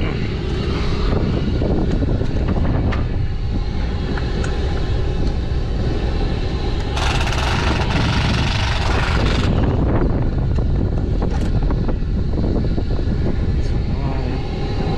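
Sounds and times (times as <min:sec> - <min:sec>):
engine low rumble: 0:00.0 - 0:14.9.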